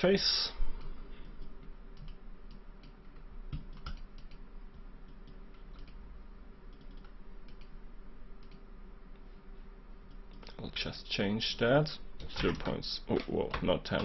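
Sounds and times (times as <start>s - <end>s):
faint steady hum: 0.0s - 14.0s
computer keyboard clicks: 2.0s - 4.4s, 5.1s - 6.0s, 6.7s - 7.7s.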